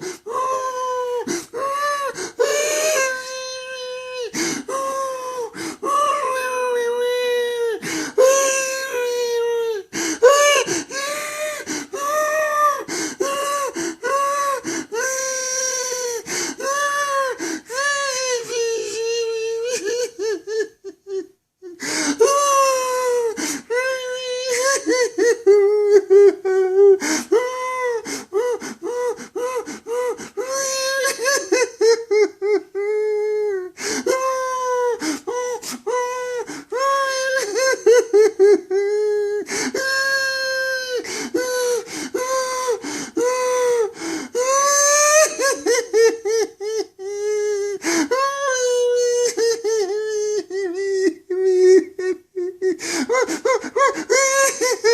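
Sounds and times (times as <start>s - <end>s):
man crying in falsetto: 0.0s - 54.9s.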